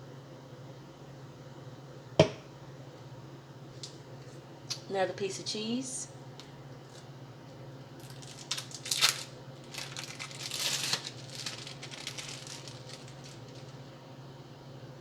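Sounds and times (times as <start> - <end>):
plastic packaging crinkling: 8.0 - 13.9.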